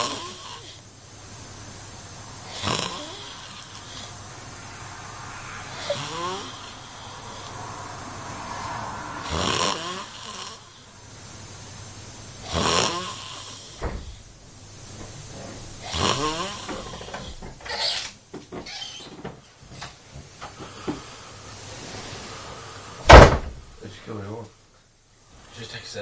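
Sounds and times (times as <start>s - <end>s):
man snoring loudly: 0.0s - 0.8s, 1.6s - 11.1s, 12.4s - 14.2s, 15.3s - 17.4s.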